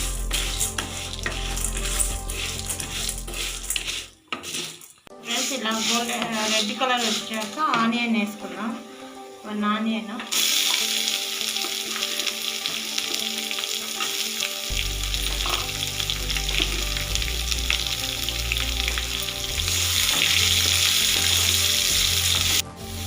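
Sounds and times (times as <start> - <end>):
bass line: 0.0 - 3.6, 14.7 - 23.0
food sizzling in hot oil: 0.0 - 9.6, 10.2 - 23.0
background music: 0.0 - 23.0.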